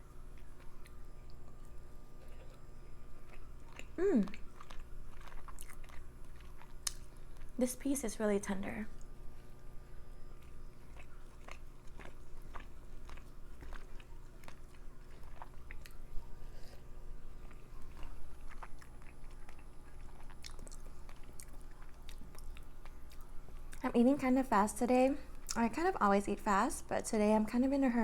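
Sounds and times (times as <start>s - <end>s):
person chewing food: 0.3s - 7.6s, 10.4s - 23.8s.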